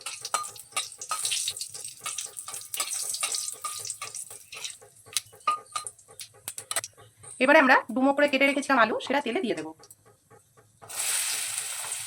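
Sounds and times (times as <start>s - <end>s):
spices sizzling in hot oil: 0.0s - 6.2s, 10.9s - 12.0s
spatula stirring: 0.0s - 6.9s.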